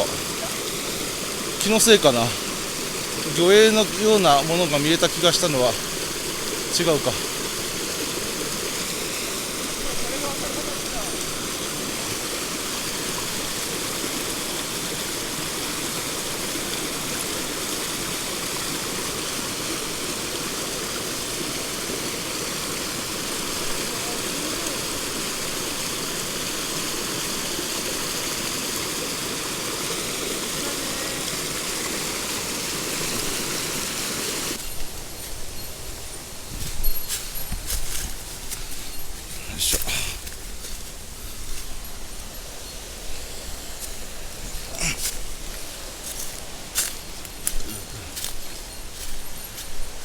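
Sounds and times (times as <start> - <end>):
mountain stream rushing: 0.0 - 50.0.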